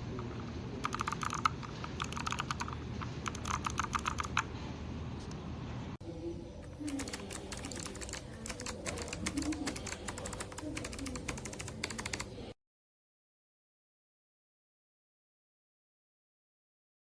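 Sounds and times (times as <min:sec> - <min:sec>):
clicky keyboard typing: 0:00.2 - 0:04.5, 0:06.6 - 0:12.3.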